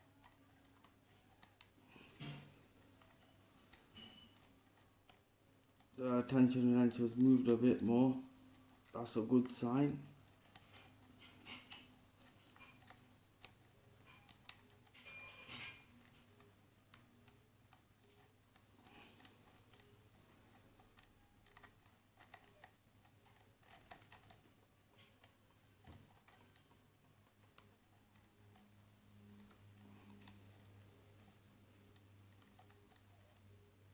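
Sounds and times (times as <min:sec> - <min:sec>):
lock pick clicking and scraping: 0:10.3 - 0:17.3.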